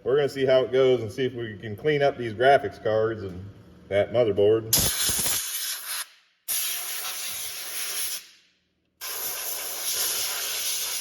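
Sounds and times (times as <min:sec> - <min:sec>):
compressed air hissing: 0:04.8 - 0:08.3, 0:09.0 - 0:11.0.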